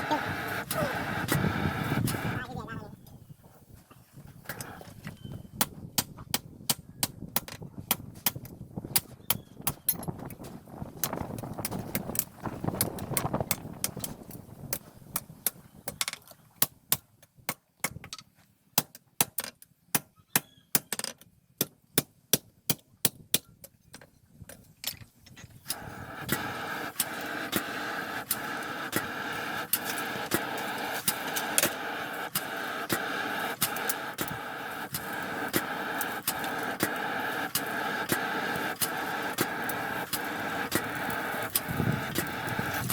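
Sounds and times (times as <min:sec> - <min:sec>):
whirring machine: 0:00.0 - 0:02.6, 0:25.7 - 0:42.9.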